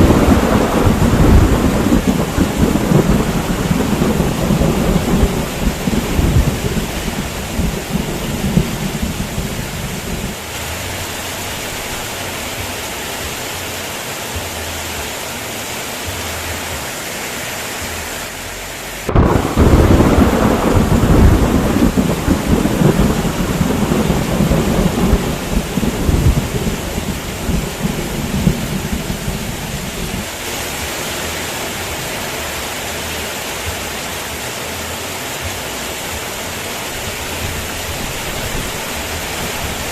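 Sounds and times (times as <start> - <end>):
loud thunderclap: 0.0 - 10.4, 19.1 - 30.3
thunder rumbling: 0.0 - 12.2, 19.0 - 30.4
heavy rain falling: 0.0 - 39.9.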